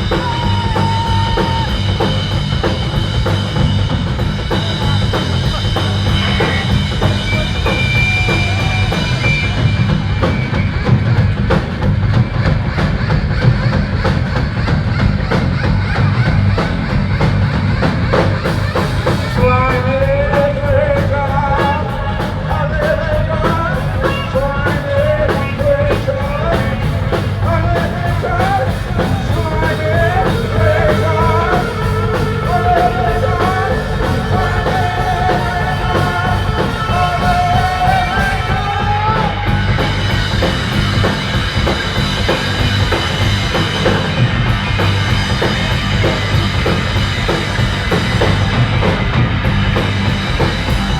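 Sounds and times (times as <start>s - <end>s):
person singing: 0.0s - 2.0s, 19.3s - 39.9s
heavy rock band playing live: 0.0s - 50.9s.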